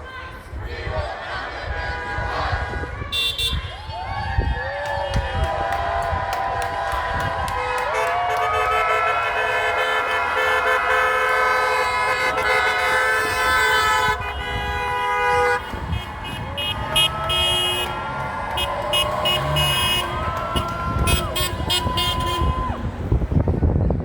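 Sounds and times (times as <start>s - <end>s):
car horns honking: 1.8s - 3.7s, 7.2s - 23.2s.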